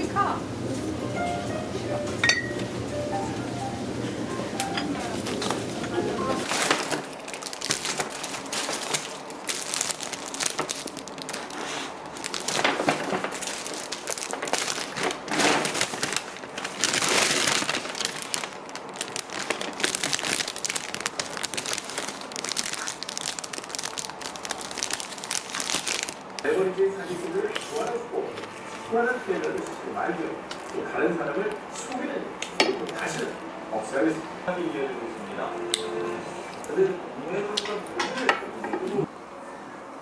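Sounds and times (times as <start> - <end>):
crinkling and crackling: 5.1 - 30.8.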